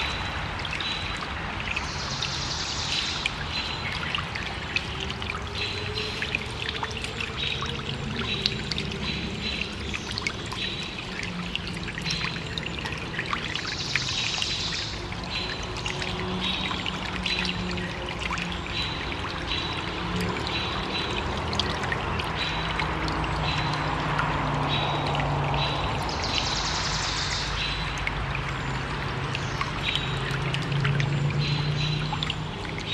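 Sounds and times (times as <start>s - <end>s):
stream trickling and gurgling: 0.0s - 32.9s.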